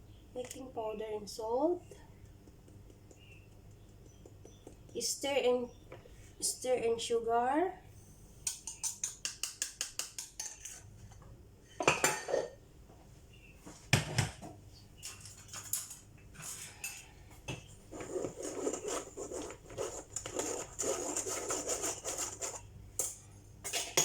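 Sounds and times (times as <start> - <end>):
utensils clattering against bowl: 8.5 - 11.2, 11.8 - 12.6, 15.0 - 17.1, 18.0 - 24.0.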